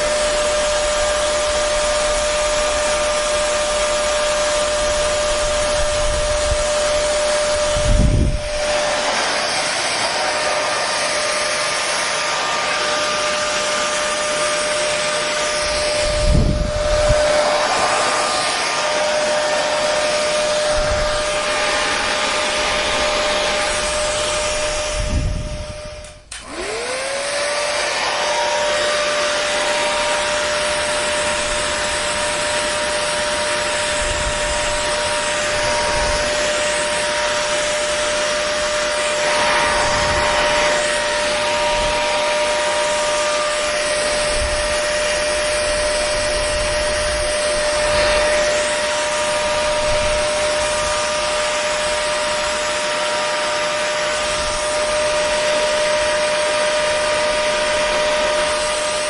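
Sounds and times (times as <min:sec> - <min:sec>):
hair dryer blowing: 0:00.0 - 0:59.0
wind rumble on microphone: 0:04.8 - 0:08.9, 0:15.9 - 0:17.7, 0:20.6 - 0:21.5, 0:22.8 - 0:26.3, 0:33.9 - 0:36.5, 0:39.5 - 0:40.8, 0:44.2 - 0:48.4, 0:49.3 - 0:51.0.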